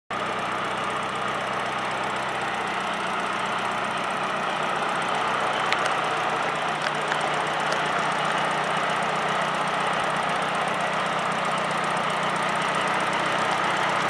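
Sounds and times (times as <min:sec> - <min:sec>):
car engine idling with ticking: 0:00.1 - 0:14.0
sharp engine clicks: 0:04.8 - 0:09.0.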